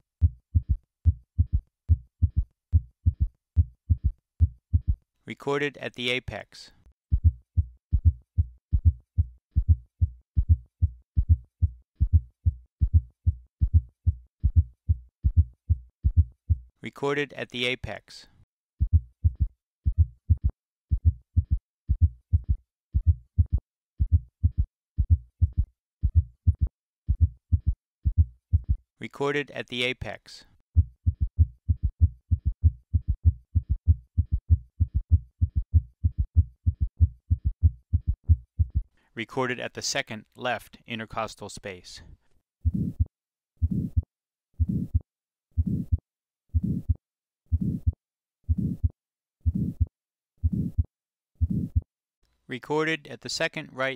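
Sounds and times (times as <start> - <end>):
heartbeat thuds: 0.2 - 5.0, 7.1 - 16.7, 18.8 - 28.8, 30.8 - 38.9, 42.6 - 45.0, 45.6 - 46.0, 46.6 - 51.9.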